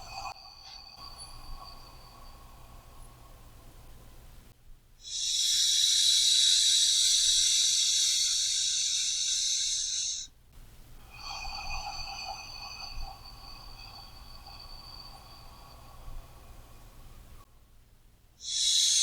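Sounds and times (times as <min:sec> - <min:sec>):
person breathing deeply: 0:05.0 - 0:10.3, 0:11.1 - 0:17.4, 0:18.4 - 0:19.0.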